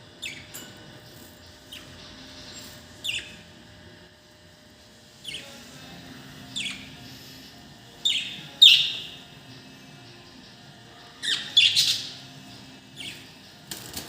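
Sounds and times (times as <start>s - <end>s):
budgerigars chirping: 3.0s - 3.4s, 8.0s - 9.2s, 11.2s - 12.2s.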